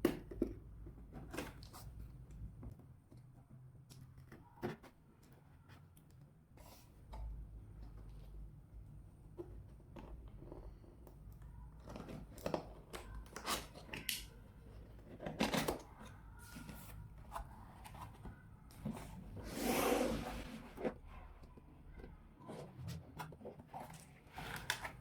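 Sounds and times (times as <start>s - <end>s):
packaging rustling and scraping: 14.7s - 21.5s, 22.4s - 25.0s.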